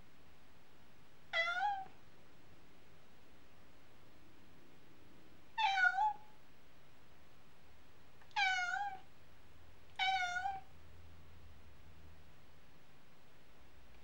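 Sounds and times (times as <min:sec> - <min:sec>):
cat meowing: 0:01.4 - 0:01.9, 0:05.6 - 0:06.2, 0:08.3 - 0:09.1, 0:10.0 - 0:10.7.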